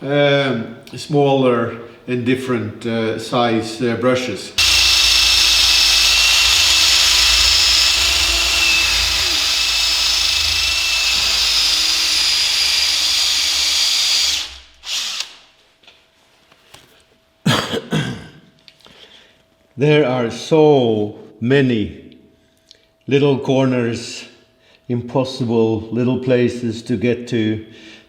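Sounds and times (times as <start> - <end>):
wire brush tool whining on steel: 4.6 - 15.4.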